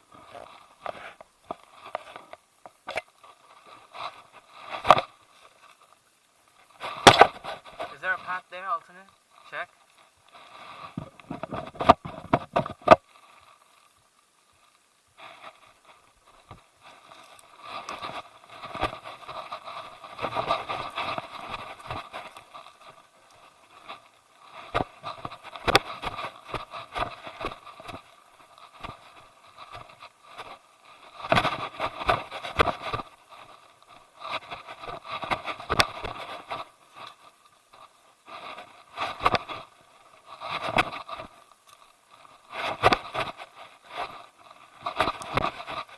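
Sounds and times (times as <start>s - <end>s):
rubbing on camera: 15.2s - 45.9s
footsteps crunching on rocks: 16.3s - 33.3s.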